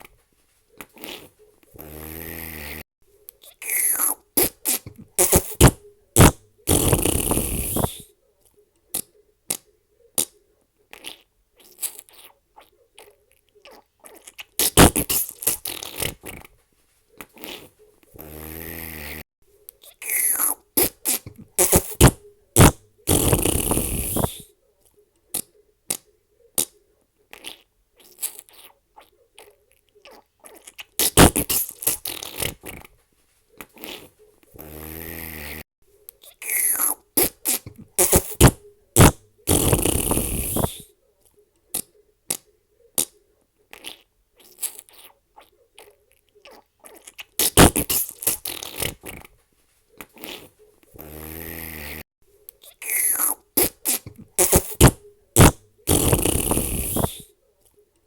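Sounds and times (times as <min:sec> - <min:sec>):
fart sounds: 0:00.8 - 0:08.1, 0:10.2 - 0:16.5, 0:17.2 - 0:19.2, 0:19.8 - 0:24.5, 0:25.3 - 0:28.8, 0:29.4 - 0:32.9, 0:33.6 - 0:35.6, 0:36.2 - 0:40.9, 0:41.7 - 0:45.2, 0:46.5 - 0:49.3, 0:50.0 - 0:52.0, 0:52.6 - 0:57.3.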